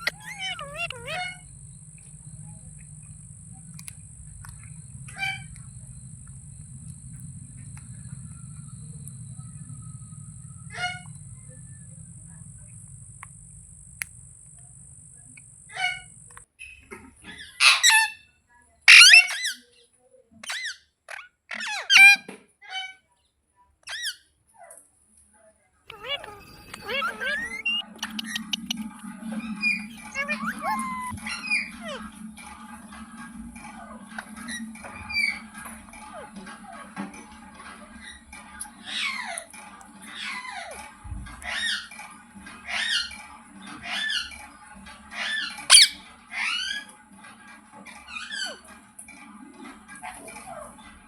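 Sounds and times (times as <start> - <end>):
parakeet squawking and screeching: 0.0 - 2.8, 5.0 - 5.6, 7.9 - 11.6, 15.7 - 16.2, 18.9 - 19.6, 25.9 - 32.2, 45.2 - 46.7
steady hum: 0.0 - 16.4, 25.9 - 33.6.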